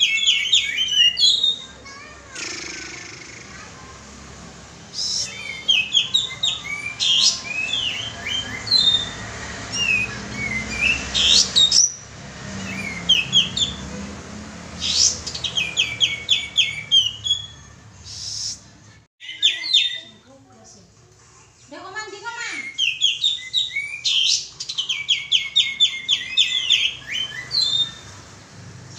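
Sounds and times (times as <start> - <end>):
bird chirping and whistling: 0.0 - 1.7, 4.9 - 13.9, 14.8 - 20.2, 22.4 - 28.2.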